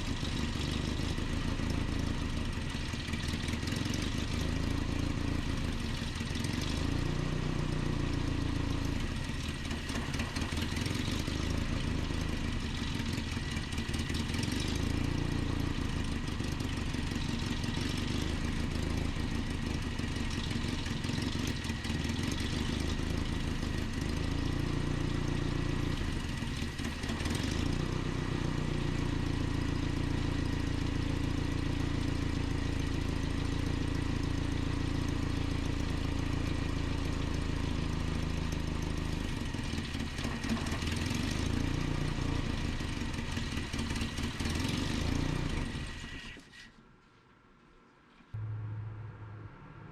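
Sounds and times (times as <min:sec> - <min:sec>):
truck engine idling unsteadily: 0:07.8 - 0:27.6.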